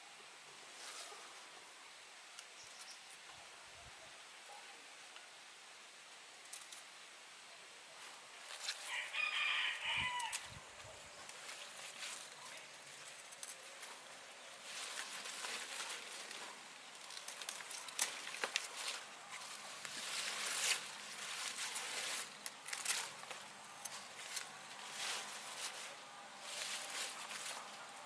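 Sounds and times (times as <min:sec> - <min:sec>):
rustling and crunching: 0:08.0 - 0:28.0.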